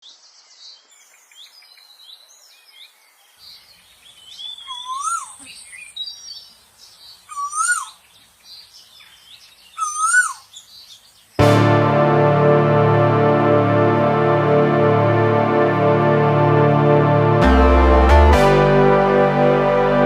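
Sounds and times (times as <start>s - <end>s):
birds chirping and whistling: 4.1s - 6.5s, 7.1s - 8.0s, 8.6s - 11.0s
rising-and-falling bird call: 4.5s - 5.8s, 7.3s - 8.0s, 9.8s - 10.5s.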